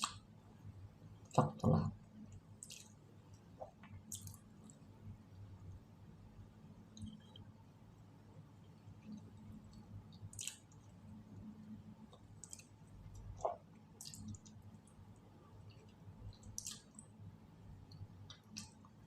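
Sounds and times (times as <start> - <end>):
faint clicks and crackles: 8.6 - 17.2.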